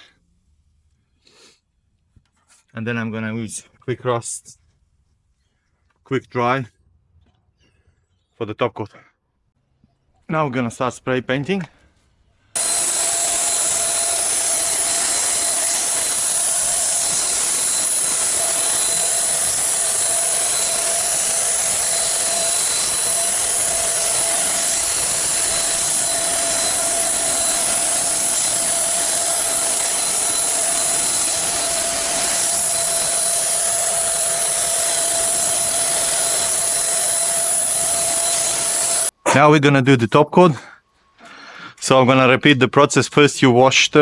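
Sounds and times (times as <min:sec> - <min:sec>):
paint sprayer hissing and whining: 0:12.6 - 0:39.1.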